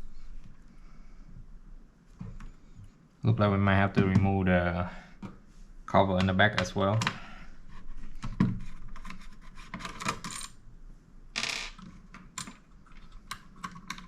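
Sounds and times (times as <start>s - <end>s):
small parts clicking and clattering: 8.2s - 10.6s.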